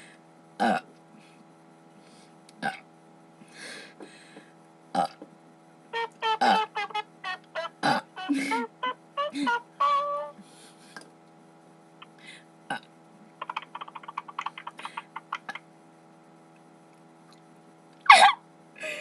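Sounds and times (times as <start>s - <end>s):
person making pitched vocal sounds: 6.0s - 10.4s
rapid pulsed vocal sounds: 6.0s - 10.4s.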